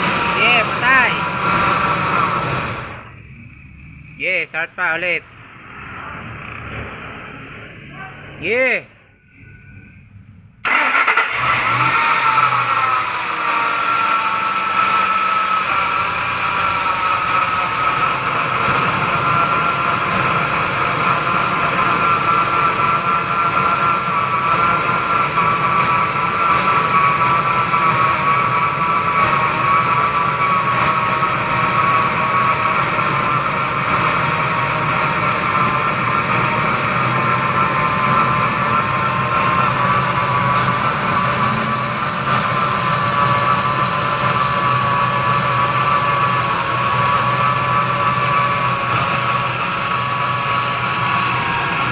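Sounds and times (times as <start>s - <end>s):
car engine starting and running: 0.0s - 51.9s.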